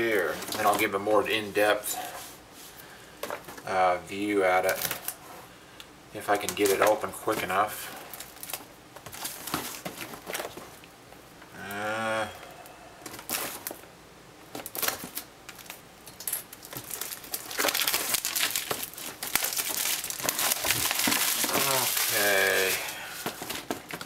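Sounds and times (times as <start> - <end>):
box packaging being handled: 0.0 - 1.4, 6.3 - 10.8, 13.0 - 15.8, 16.4 - 24.0
person humming: 11.5 - 12.9, 21.5 - 23.2.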